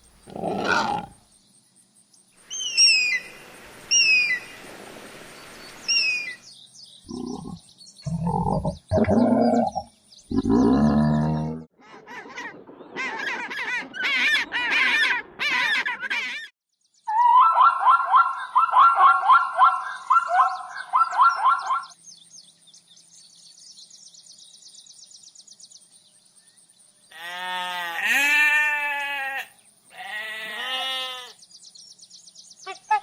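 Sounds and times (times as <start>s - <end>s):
harsh wavering bird calls: 2.4s - 4.6s, 5.7s - 22.0s
loud repeated bird calls: 2.4s - 4.6s, 5.5s - 6.4s, 7.0s - 22.0s, 27.1s - 31.8s, 32.5s - 33.0s.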